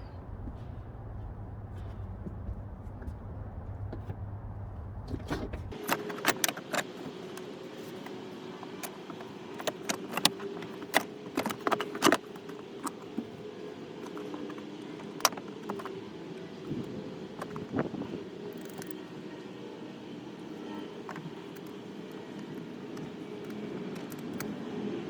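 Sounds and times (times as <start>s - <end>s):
faint steady hum: 0.0s - 5.8s.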